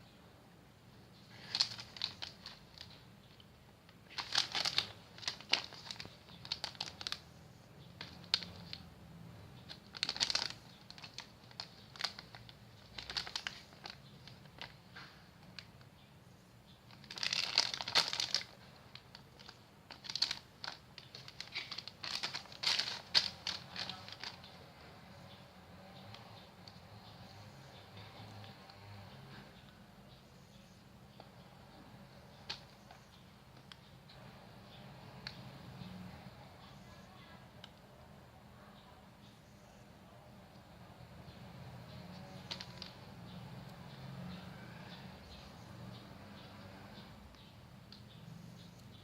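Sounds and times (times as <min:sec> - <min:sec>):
plastic packaging crinkling: 0:01.2 - 0:03.4, 0:04.0 - 0:07.3, 0:07.9 - 0:08.9, 0:09.6 - 0:15.8, 0:16.9 - 0:24.6, 0:32.3 - 0:33.0, 0:41.8 - 0:43.4.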